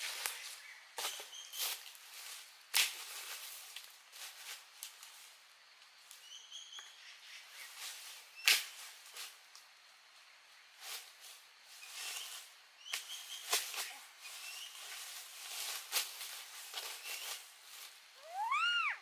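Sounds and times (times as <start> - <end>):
rustles: 0.0 - 19.0
bird chirp: 6.2 - 7.8, 11.8 - 14.9.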